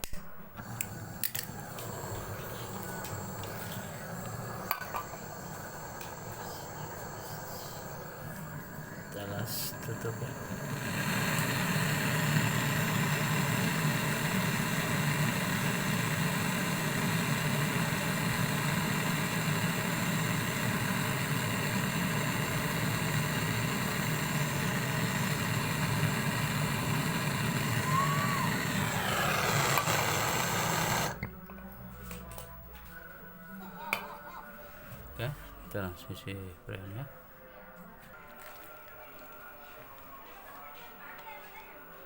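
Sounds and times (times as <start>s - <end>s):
vacuum pump whine: 0.5s - 31.6s.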